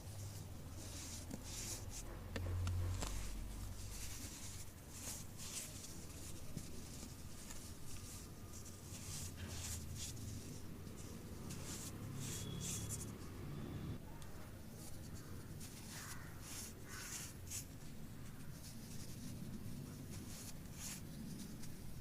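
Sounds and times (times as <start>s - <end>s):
soft crackles: 0.0s - 13.3s.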